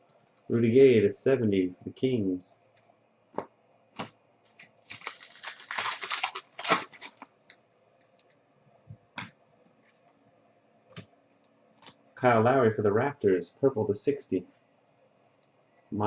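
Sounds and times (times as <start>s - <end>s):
card pack wrapper tearing: 4.8s - 7.3s.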